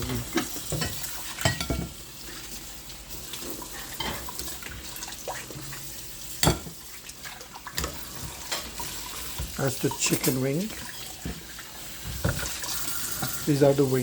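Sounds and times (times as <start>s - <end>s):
kitchen utensils clicking and knocking: 7.7s - 14.0s.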